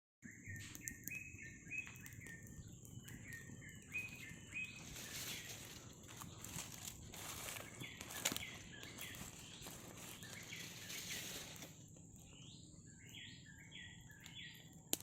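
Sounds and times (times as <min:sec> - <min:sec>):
songbird whistling notes: 0:00.2 - 0:05.8, 0:07.5 - 0:11.5, 0:12.2 - 0:14.7
rustling noise: 0:04.8 - 0:11.9.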